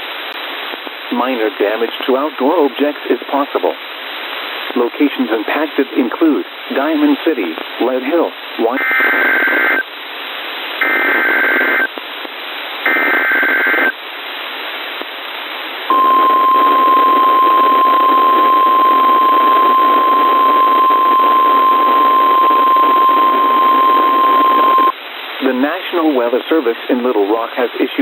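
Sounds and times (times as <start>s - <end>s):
radio hiss: 0.0s - 28.0s
steady alarm tone: 15.9s - 24.9s
warbling digital data tones: 15.9s - 24.9s.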